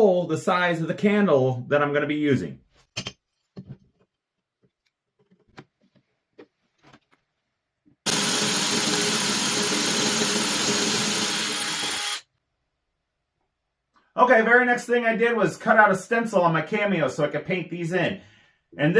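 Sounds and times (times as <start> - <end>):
power drill boring into wood: 8.1 - 12.3.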